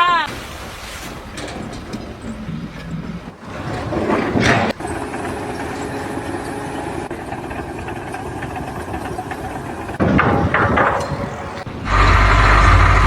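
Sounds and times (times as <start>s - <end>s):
loud rough noise: 3.3s - 13.0s
engine idling: 4.5s - 13.0s.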